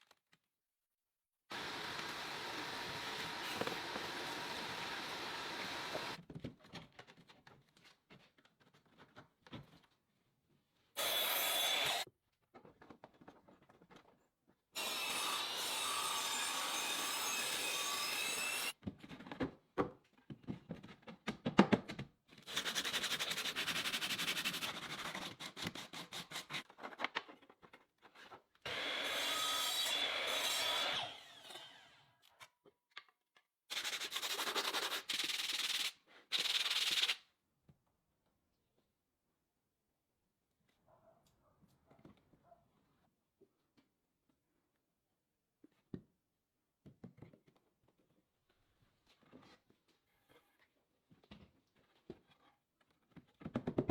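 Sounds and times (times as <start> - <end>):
power tool working wood: 1.5 - 6.2, 11.0 - 12.0.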